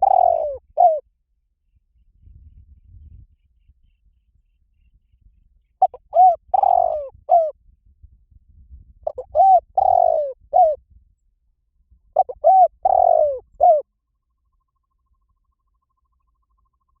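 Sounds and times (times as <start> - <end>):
dove cooing: 0.0 - 1.0, 5.8 - 7.6, 9.0 - 10.8, 12.2 - 13.8.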